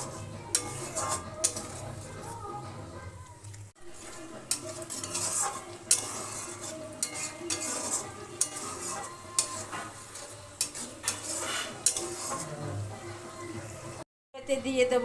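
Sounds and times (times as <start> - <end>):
utensil scraping and knocking pan: 0.0 - 2.4, 3.8 - 13.0
spices sizzling in oil: 0.0 - 2.6, 3.2 - 14.0.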